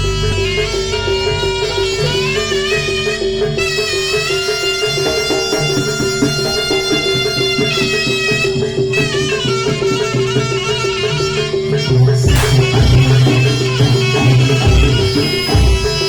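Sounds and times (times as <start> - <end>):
reedy wind instrument melody: 0.0 - 16.0
hand drum beats: 11.8 - 16.0
repeated metallic note: 12.1 - 16.0.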